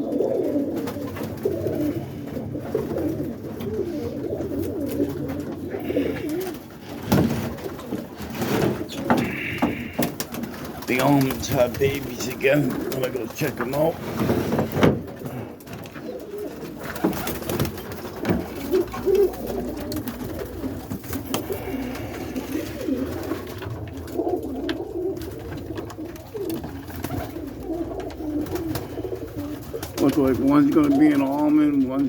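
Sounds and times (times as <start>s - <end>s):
pigeons cooing: 0.0s - 32.0s.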